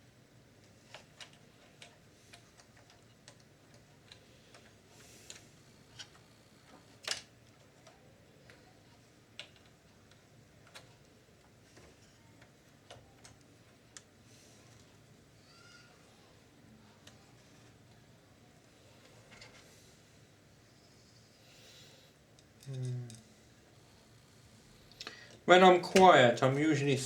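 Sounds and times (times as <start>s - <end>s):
small clicks and taps of tools: 0.6s - 8.7s, 9.3s - 15.0s.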